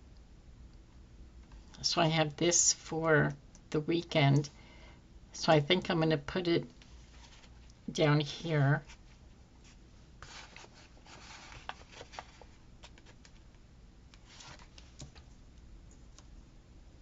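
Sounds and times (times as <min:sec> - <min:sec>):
paper rustling: 0:06.9 - 0:07.7, 0:08.9 - 0:13.4, 0:14.2 - 0:15.3.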